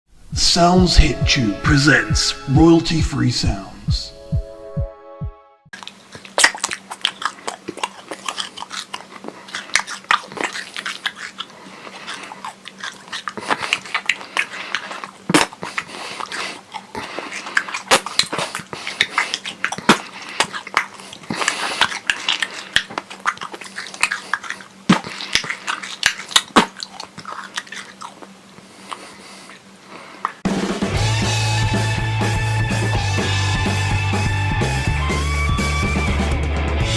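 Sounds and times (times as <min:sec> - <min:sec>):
carrot crunching and chewing: 0:05.8 - 0:30.4
faint steady hum: 0:05.8 - 0:30.4.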